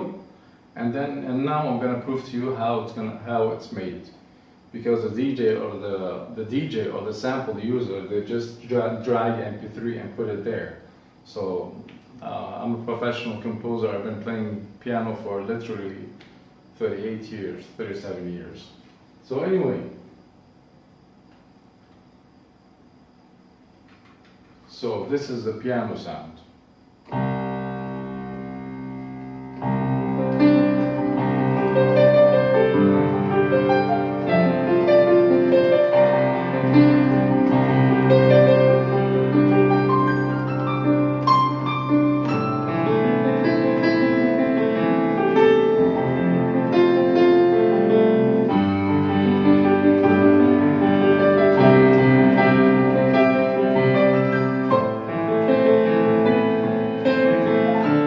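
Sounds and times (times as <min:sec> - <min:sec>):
piano chords and melody: 0:27.1 - 0:58.0.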